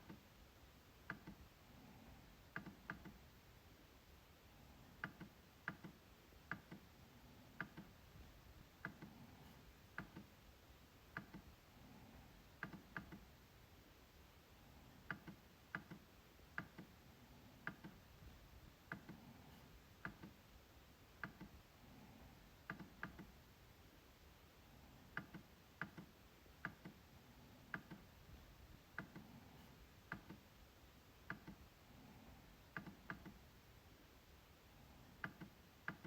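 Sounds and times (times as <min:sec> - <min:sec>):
trackpad clicks: 0:02.5 - 0:03.2, 0:05.0 - 0:06.9, 0:07.6 - 0:08.0, 0:09.9 - 0:10.3, 0:12.6 - 0:13.3, 0:15.1 - 0:17.0, 0:17.6 - 0:18.0, 0:21.2 - 0:21.6, 0:22.6 - 0:23.3, 0:25.1 - 0:27.0, 0:27.7 - 0:28.1, 0:30.1 - 0:30.4, 0:31.2 - 0:31.6, 0:32.7 - 0:33.4, 0:35.2 - 0:36.0.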